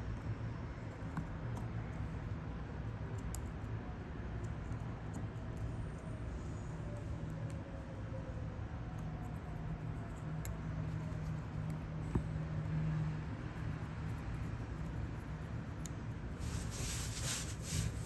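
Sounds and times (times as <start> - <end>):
scraping rubbing sound: 16.4 - 18.0.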